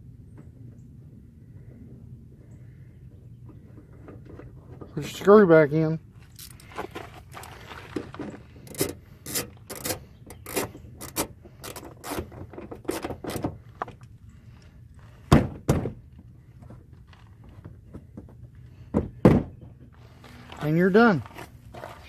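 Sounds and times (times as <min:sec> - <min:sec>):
socket tool clicks and scrapes: 0:08.6 - 0:13.2.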